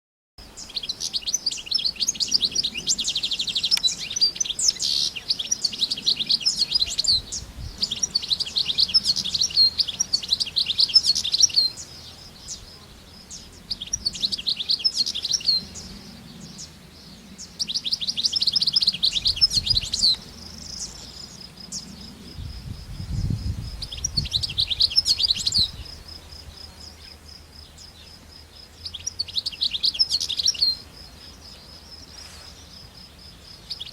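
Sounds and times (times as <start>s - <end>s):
goldfinch singing: 0.6s - 12.7s, 28.8s - 32.0s.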